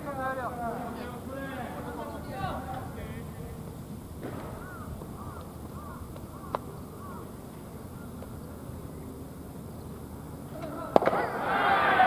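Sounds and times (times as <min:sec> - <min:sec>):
outdoor background noise: 0:00.0 - 0:12.0
sharp pop: 0:04.2 - 0:04.6, 0:10.9 - 0:11.3
crows cawing: 0:04.2 - 0:08.2.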